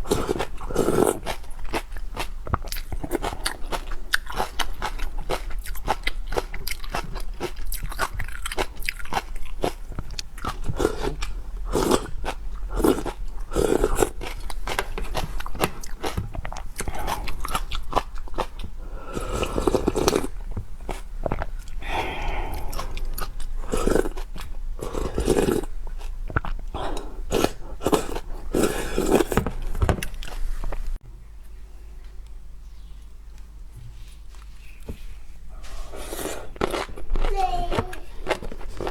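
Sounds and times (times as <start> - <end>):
person crunching and chewing food: 0.0 - 31.0, 35.6 - 38.9.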